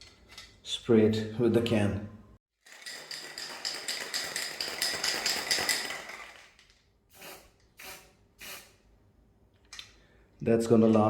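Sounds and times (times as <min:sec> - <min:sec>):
aerosol spray can hissing: 0:07.1 - 0:08.8.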